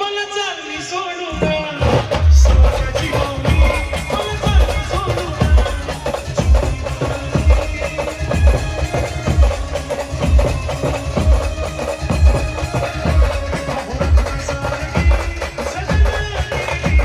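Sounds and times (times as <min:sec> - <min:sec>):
slow bass drum beat: 0:01.4 - 0:17.0
brass band melody: 0:01.6 - 0:16.1.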